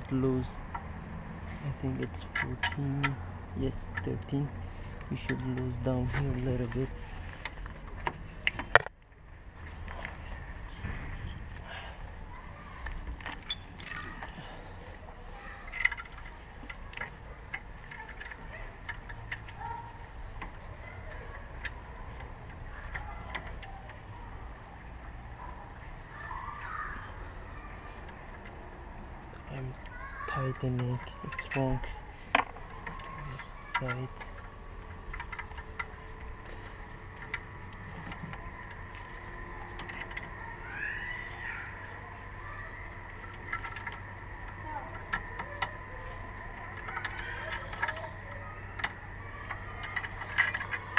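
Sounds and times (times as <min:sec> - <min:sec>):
hand tools clicking and knocking: 0:12.8 - 0:14.4, 0:30.4 - 0:40.4, 0:43.1 - 0:50.9.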